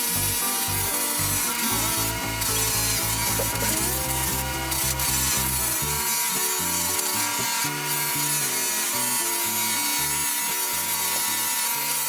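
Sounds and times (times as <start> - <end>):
low rhythmic bass notes: 0.0 - 6.0.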